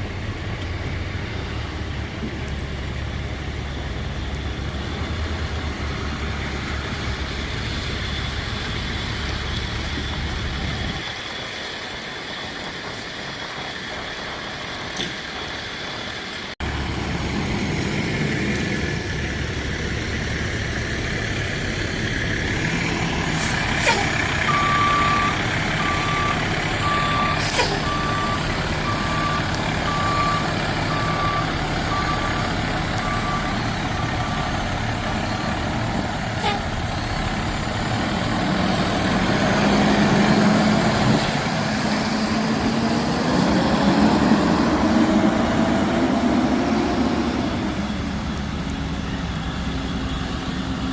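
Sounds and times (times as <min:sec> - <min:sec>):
fire truck diesel engine running: 0:00.0 - 0:50.9
backup alarm beeping: 0:24.4 - 0:35.8.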